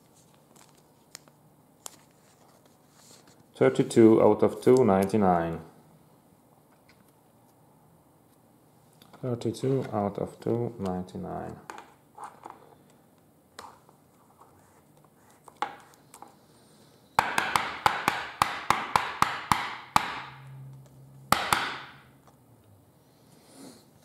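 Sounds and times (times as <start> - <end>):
cards rustling: 0.0 - 3.4.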